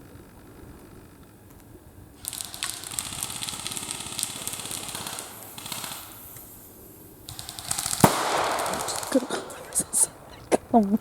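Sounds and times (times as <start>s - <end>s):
airsoft gun firing full-auto: 2.2s - 10.3s.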